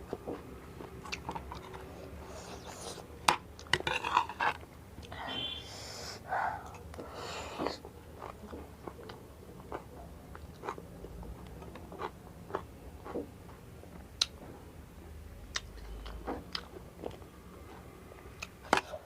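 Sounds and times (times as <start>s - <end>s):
person chewing crunchy snack: 0.1s - 3.0s, 6.6s - 10.8s, 11.6s - 13.3s.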